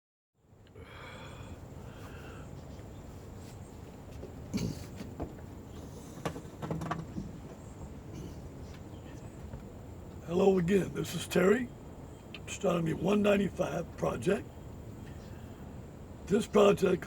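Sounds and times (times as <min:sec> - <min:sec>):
steady background hiss: 0:00.4 - 0:17.0
sharp knocks and clicks: 0:06.2 - 0:07.6.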